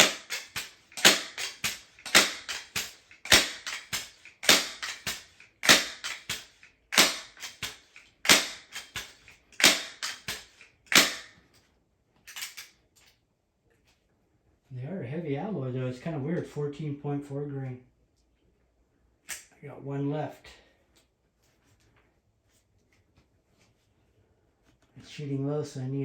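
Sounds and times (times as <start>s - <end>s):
air rifle pump lever clacks: 0.0s - 11.3s.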